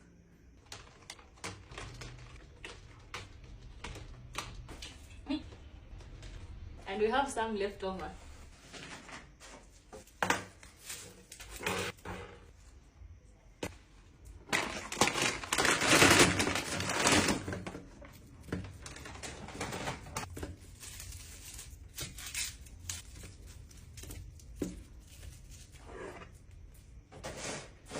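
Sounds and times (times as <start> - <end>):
rustling of bags: 14.4 - 21.5.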